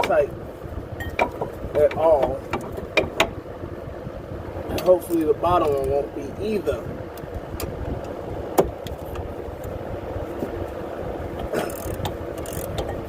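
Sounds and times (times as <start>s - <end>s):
low rushing hum: 0.0s - 13.0s
wrench clicking: 11.7s - 13.0s.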